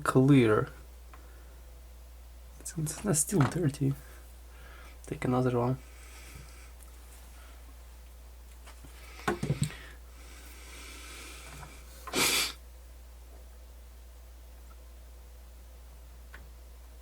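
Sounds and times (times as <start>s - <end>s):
person sniffing: 10.5s - 12.6s.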